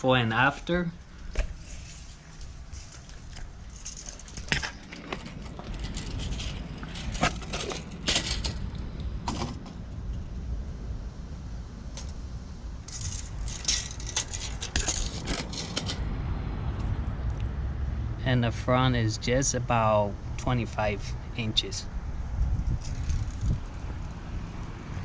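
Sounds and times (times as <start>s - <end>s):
low background hum: 0.0s - 25.0s
tape measure clicking and jingling: 12.9s - 16.0s.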